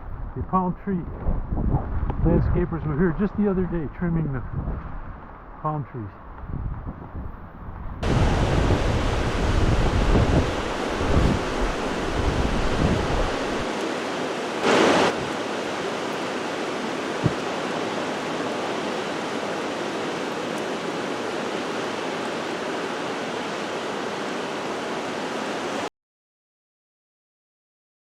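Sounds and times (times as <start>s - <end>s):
storm wind rushing: 6.5s - 25.8s.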